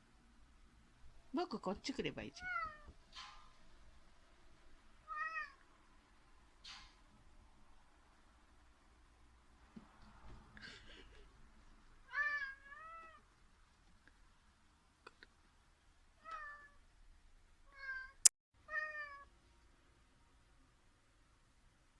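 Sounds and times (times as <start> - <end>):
cat meowing: 2.4 - 2.9, 5.0 - 5.6, 12.0 - 13.2, 16.2 - 16.8, 17.7 - 19.3.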